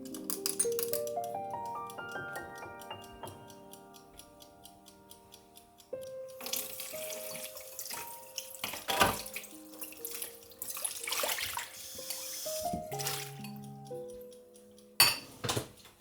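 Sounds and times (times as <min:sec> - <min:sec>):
tap water running into sink: 0:06.4 - 0:13.6.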